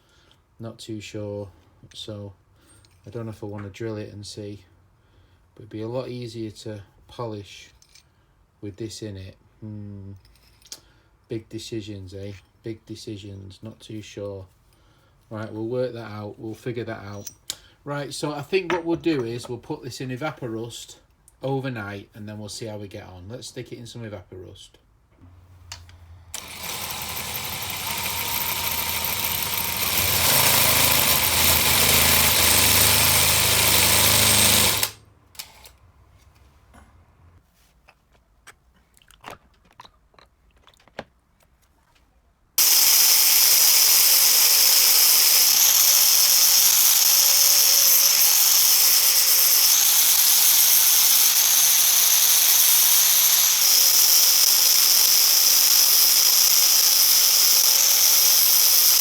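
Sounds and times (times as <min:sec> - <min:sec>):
power tool motor humming: 0:26.4 - 0:35.0, 0:42.6 - 0:59.0
high-pitched hissing grind: 0:42.6 - 0:59.0.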